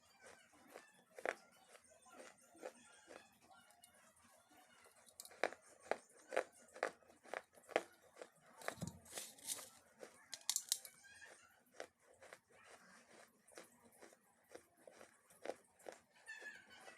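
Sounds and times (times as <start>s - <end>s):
crisp crunching: 7.7s - 10.9s.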